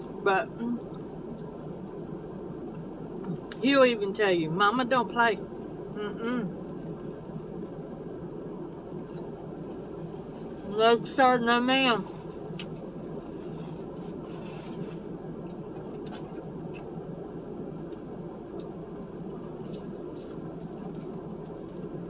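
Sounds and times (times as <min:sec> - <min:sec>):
steady background hum: 0:00.0 - 0:22.0
person chewing: 0:18.5 - 0:22.0.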